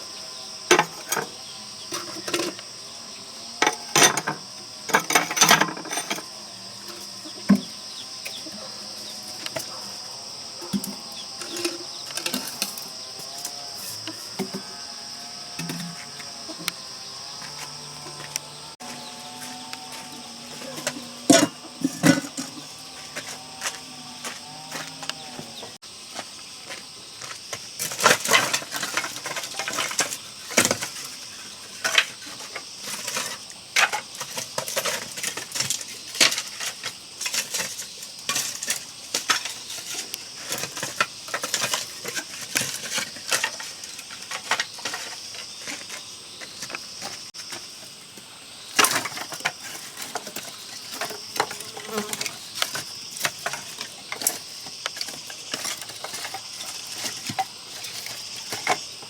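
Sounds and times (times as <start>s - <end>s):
high-pitched insect drone: 0.0s - 27.4s.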